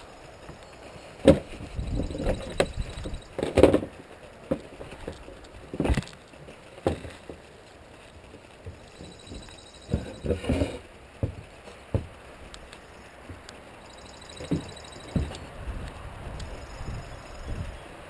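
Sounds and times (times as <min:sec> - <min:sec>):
knocks and thumps: 0:08.6 - 0:12.2, 0:14.3 - 0:15.5.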